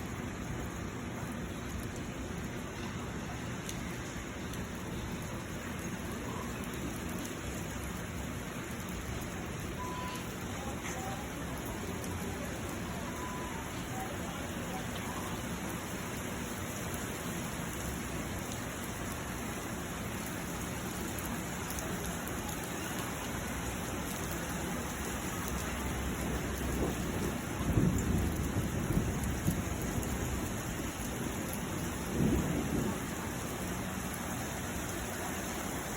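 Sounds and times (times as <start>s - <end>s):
heavy rain pouring: 0.0s - 35.9s
low thunder rumbles: 25.8s - 34.8s.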